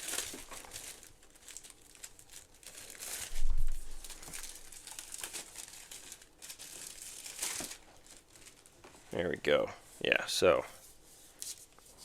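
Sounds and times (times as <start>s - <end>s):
packaging crinkling and tearing: 0.0s - 8.8s.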